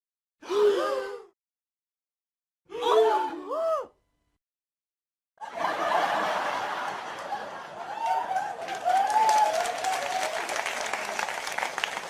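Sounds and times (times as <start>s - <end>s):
audience laughing: 5.4s - 9.0s
scattered clapping: 7.9s - 12.0s.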